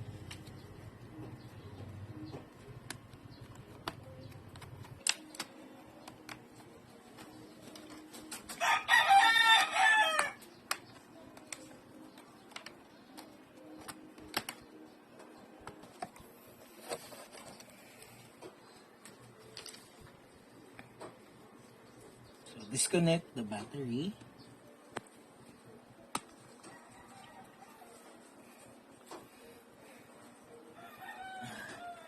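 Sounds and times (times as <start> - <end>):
rooster crowing: 8.6 - 10.4, 26.6 - 28.2, 30.8 - 32.0.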